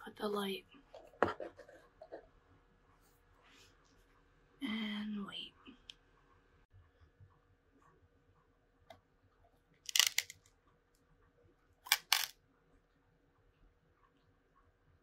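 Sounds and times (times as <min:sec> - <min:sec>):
small hard objects clicking: 0:09.9 - 0:10.5, 0:11.9 - 0:12.3.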